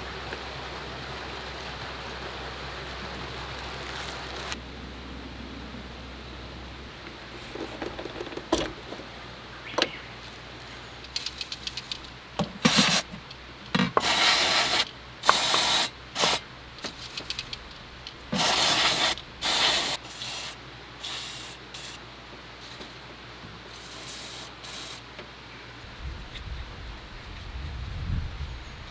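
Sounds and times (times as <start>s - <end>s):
quick ticks: 11.0s - 13.4s, 14.8s - 18.4s
clicks and knocks of tools: 11.0s - 14.1s, 16.8s - 18.4s
metal parts scraping: 11.0s - 20.0s.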